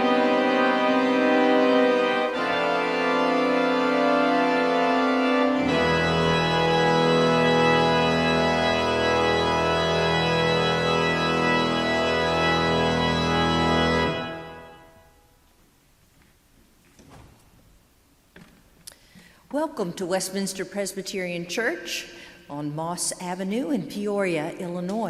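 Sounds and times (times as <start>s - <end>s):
deep bass organ chord: 0.0s - 15.0s
organ chords: 0.0s - 16.1s.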